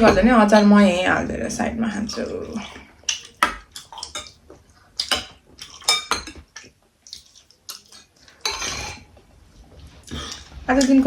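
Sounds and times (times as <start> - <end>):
cutlery clinking on plates: 0.0 - 1.0, 2.6 - 4.4, 5.0 - 6.7, 7.7 - 9.1.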